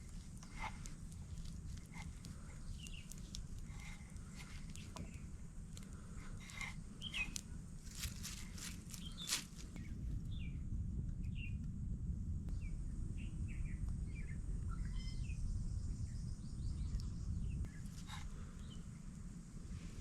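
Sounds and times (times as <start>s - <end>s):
low rumble: 0.0s - 20.0s
bird chirping: 1.9s - 5.3s, 6.5s - 7.4s, 8.0s - 9.5s, 12.5s - 18.0s.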